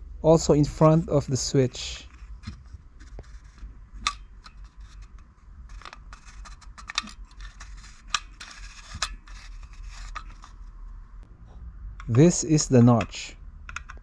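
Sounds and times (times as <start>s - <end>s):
plastic scraping: 4.3s - 10.8s
plastic toy parts clicking: 5.7s - 10.5s, 12.8s - 14.0s.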